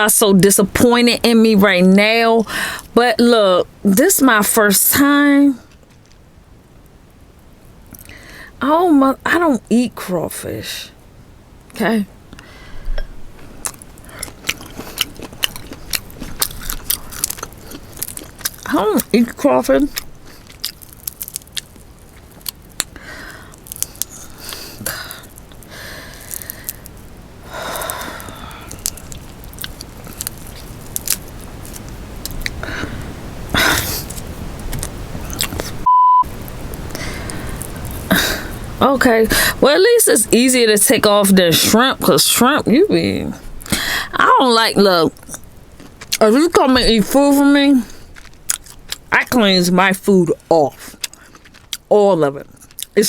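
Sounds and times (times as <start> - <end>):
crawfish shells cracking: 13.4 - 32.7, 33.5 - 35.7, 36.4 - 39.5, 44.8 - 49.5, 50.3 - 53.0
wet mouth sounds: 27.6 - 35.8, 50.8 - 51.9
censor beep: 35.8 - 36.3
breathy burst: 43.7 - 44.2.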